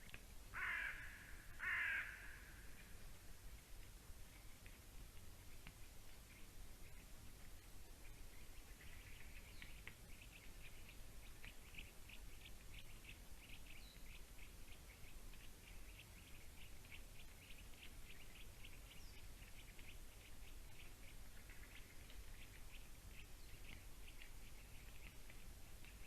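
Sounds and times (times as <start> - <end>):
faint high bird calls: 0.5 - 3.1.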